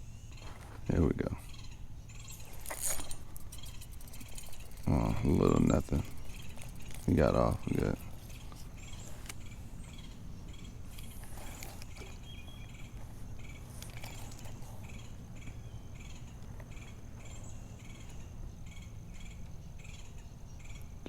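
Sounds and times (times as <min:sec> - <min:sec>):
insects chirping: 0:00.0 - 0:21.0
thin high buzz: 0:02.1 - 0:09.6.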